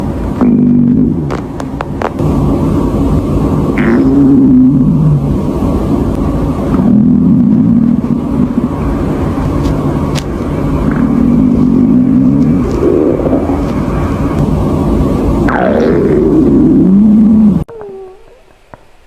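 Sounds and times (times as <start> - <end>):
stomach growling: 0.4 - 2.2, 3.8 - 5.3, 9.5 - 14.4, 15.5 - 18.8.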